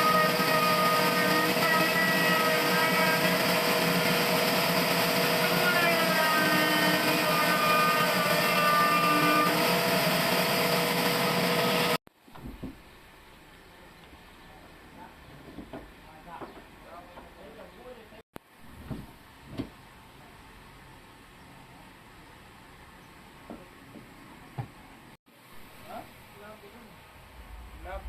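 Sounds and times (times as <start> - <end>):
sawmill machinery whining: 0.0 - 12.0.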